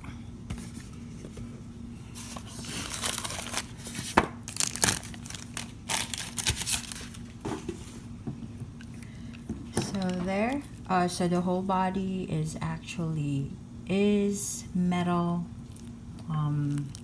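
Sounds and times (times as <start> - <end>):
plastic packaging crinkling: 2.1 - 7.4.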